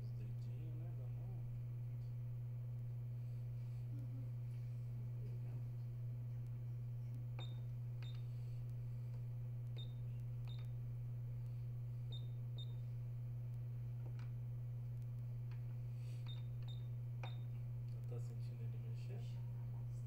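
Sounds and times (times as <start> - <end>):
low electrical hum: 0.0 - 20.0
control panel click-beeps: 7.4 - 8.3, 9.7 - 10.8, 12.1 - 12.8, 16.3 - 17.5.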